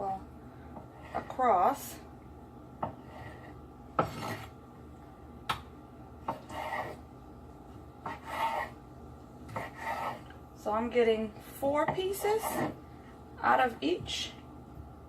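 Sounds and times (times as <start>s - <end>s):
knife scraping stroke: 3.0s - 4.5s, 6.3s - 7.0s, 8.0s - 8.8s, 9.5s - 10.3s, 12.1s - 12.8s.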